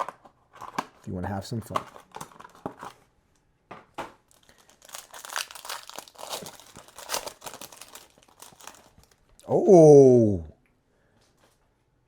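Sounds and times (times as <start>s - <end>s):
card packaging crinkling and tearing: 0.0s - 3.0s, 4.2s - 9.5s.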